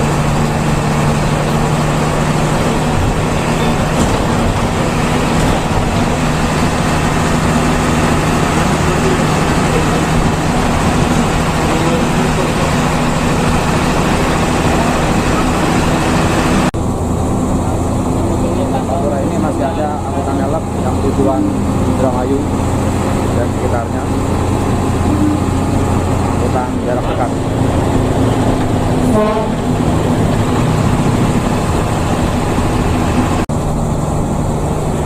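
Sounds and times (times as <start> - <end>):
bus engine droning: 0.0 - 35.0
road and tyre noise: 0.0 - 35.0.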